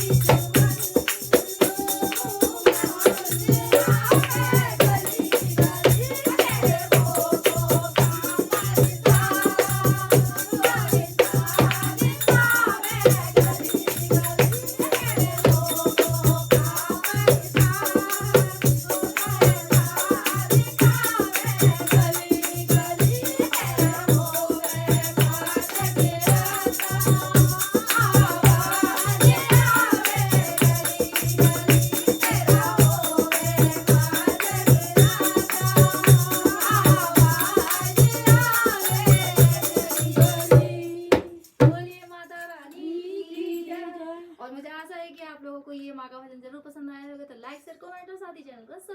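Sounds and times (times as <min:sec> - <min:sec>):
jingling rattling percussion: 0:00.0 - 0:42.8
person singing devotional song: 0:00.0 - 0:47.6.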